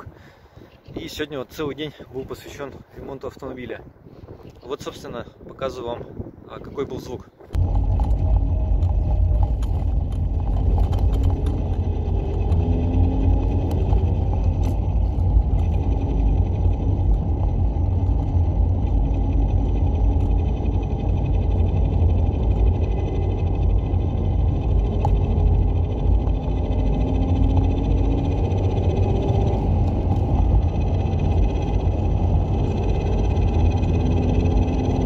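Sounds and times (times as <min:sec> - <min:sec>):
low road and drivetrain rumble: 0:00.0 - 0:35.0
faint gearbox hum: 0:07.6 - 0:35.0.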